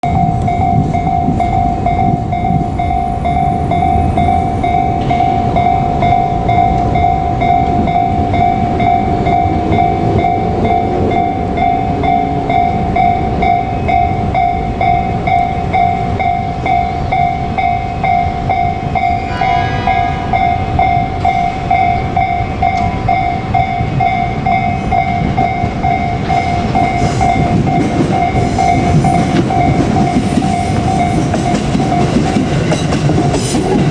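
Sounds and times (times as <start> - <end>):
electric trains rumbling past: 0.0 - 33.9
level crossing warning bell: 0.0 - 33.9
train horn blast: 19.2 - 20.8.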